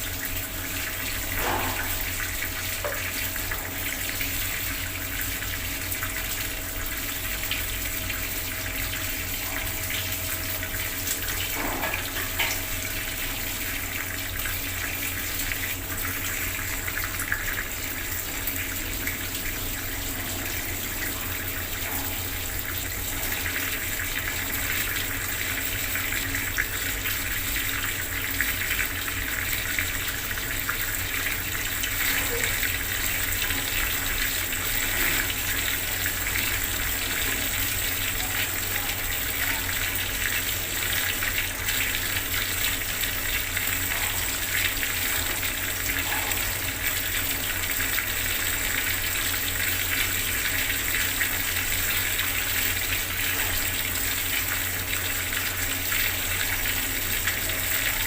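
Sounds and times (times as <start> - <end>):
water tap splashing into basin: 0.0 - 58.0.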